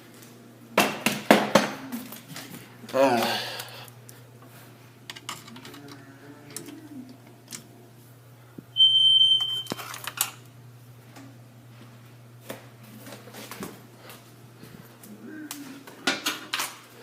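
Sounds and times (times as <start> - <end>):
fire alarm beep: 8.8 - 9.8.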